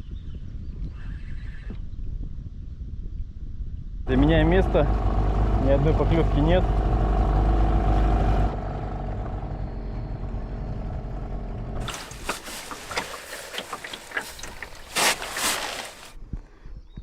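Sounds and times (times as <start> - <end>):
boat motor running: 11.0 - 16.1.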